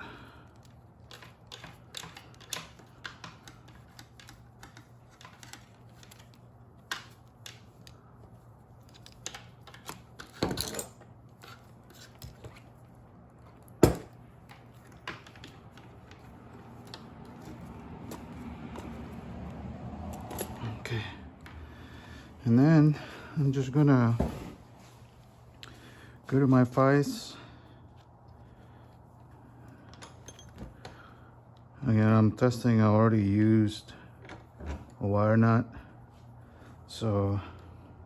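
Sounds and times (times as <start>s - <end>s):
wires and wire nut clicking: 0.5s - 8.1s, 8.8s - 12.4s.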